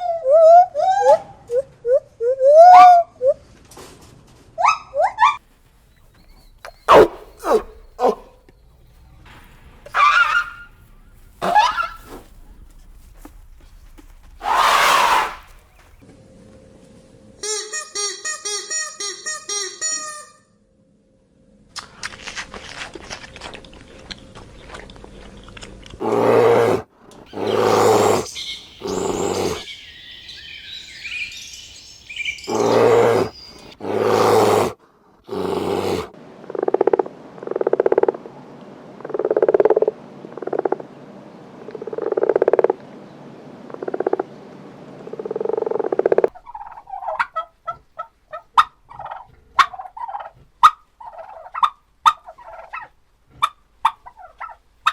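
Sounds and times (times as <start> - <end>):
farm animals calling: 9.9 - 12.5, 14.4 - 15.9, 26.0 - 34.7, 45.9 - 54.9
quick chattering animal calls: 27.3 - 33.8.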